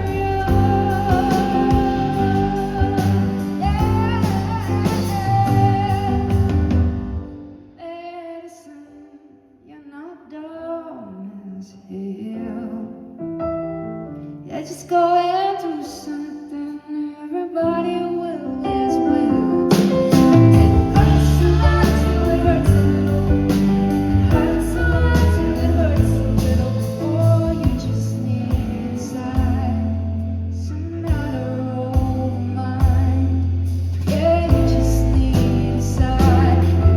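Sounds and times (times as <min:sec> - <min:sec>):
woman singing: 0:00.0 - 0:07.2, 0:07.8 - 0:13.2, 0:14.4 - 0:36.9
live band playing: 0:00.0 - 0:07.6, 0:18.7 - 0:30.4, 0:31.0 - 0:36.9
keyboard: 0:00.0 - 0:07.8, 0:17.6 - 0:36.9.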